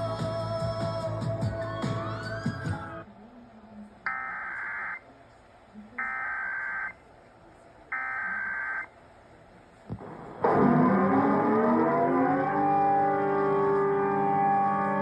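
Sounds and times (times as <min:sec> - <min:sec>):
rising siren tone: 0:10.0 - 0:15.0.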